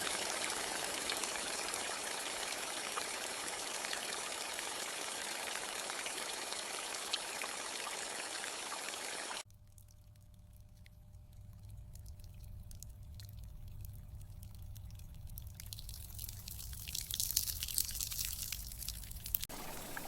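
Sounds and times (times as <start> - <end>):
rain on a tin roof: 0.0 - 9.4, 15.8 - 20.0.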